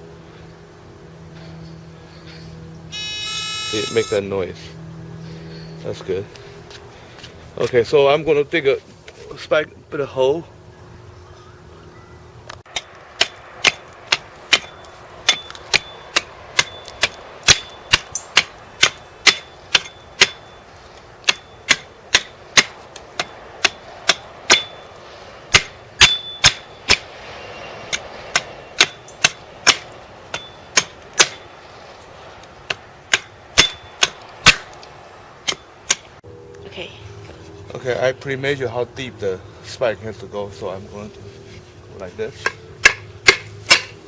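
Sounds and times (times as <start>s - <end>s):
hammer striking metal stake: 12.7s - 20.6s, 21.2s - 24.9s, 25.5s - 27.1s, 27.9s - 31.5s, 32.7s - 34.8s, 35.4s - 36.1s, 42.4s - 44.0s.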